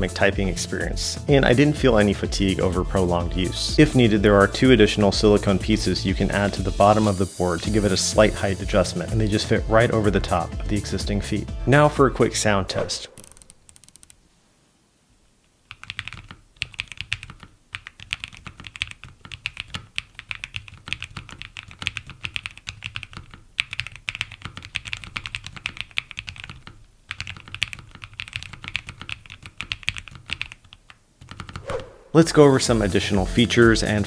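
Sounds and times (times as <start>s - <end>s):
mechanical keyboard typing: 15.7s - 31.5s.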